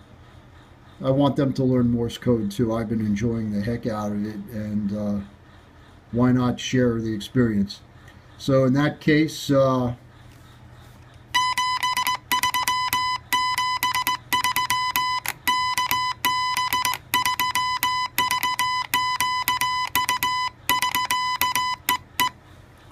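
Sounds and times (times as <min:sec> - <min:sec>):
morse code buzzy tone: 0:11.3 - 0:22.4.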